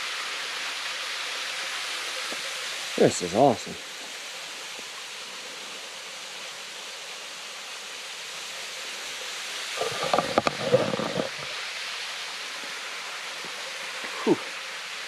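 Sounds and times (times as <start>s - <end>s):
waterfall and creek rushing: 0.0s - 15.0s.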